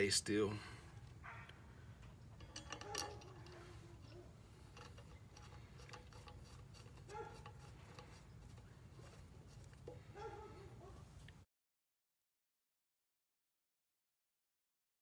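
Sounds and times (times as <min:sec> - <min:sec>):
small metal parts clicking: 0:02.0 - 0:10.0.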